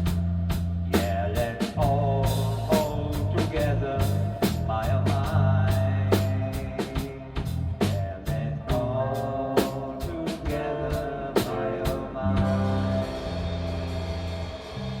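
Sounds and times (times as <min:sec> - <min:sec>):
bass guitar: 0:00.0 - 0:15.0
drum kit: 0:00.0 - 0:15.0
electric guitar: 0:10.5 - 0:15.0.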